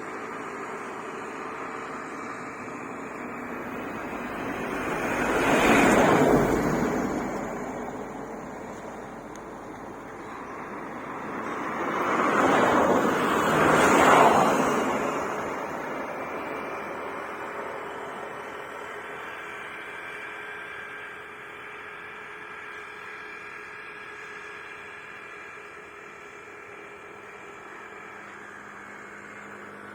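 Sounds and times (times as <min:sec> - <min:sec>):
vehicle passing by: 0:00.0 - 0:21.4.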